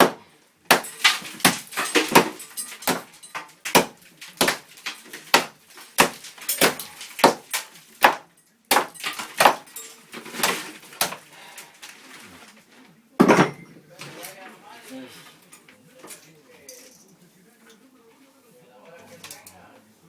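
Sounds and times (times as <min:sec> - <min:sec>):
hammer striking cinder block: 0:00.0 - 0:09.8.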